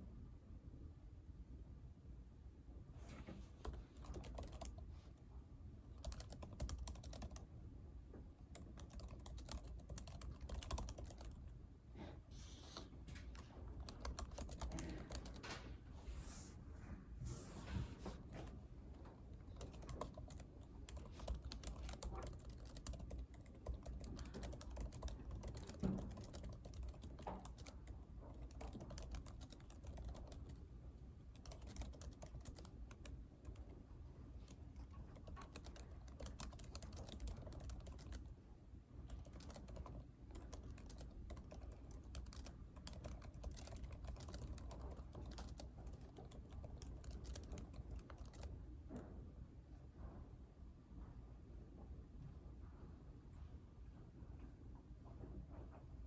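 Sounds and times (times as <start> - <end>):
keyboard typing: 3.6 - 4.8, 6.0 - 7.4, 8.5 - 11.4, 12.6 - 15.6, 18.3 - 30.6, 31.3 - 33.8, 34.4 - 38.3, 39.1 - 48.6.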